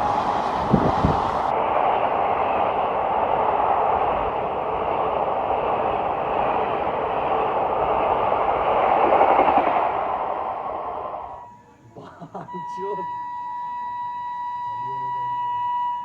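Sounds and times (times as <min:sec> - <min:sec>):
train passing at high speed: 0:00.0 - 0:11.5.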